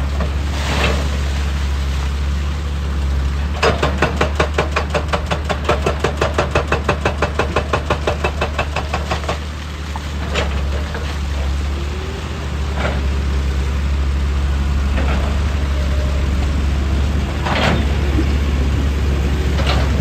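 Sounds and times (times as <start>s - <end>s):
diesel engine running: 0.0s - 20.0s
hydraulic breaker hammering rock: 3.6s - 9.5s.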